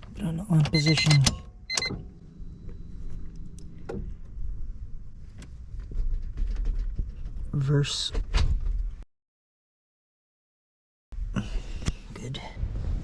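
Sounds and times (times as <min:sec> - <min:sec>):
car ignition clicks: 0:00.0 - 0:04.1.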